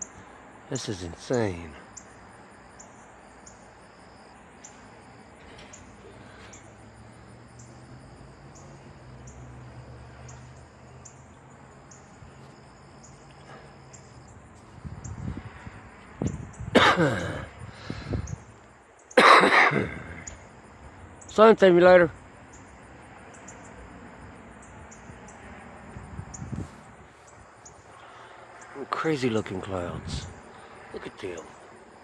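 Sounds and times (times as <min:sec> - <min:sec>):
insects chirping: 0:00.0 - 0:32.0
man's voice: 0:00.7 - 0:01.8, 0:28.8 - 0:30.3.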